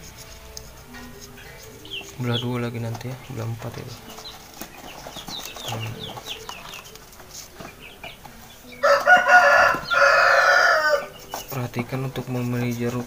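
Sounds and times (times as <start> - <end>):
rooster crowing: 8.8 - 11.2.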